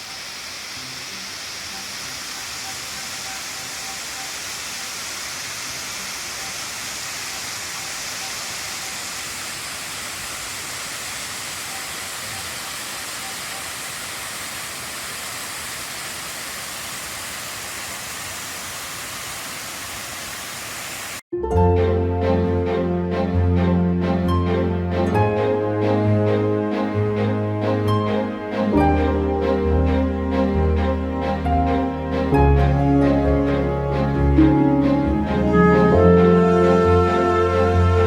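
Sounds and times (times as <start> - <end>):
waterfall rushing: 0.0 - 21.2.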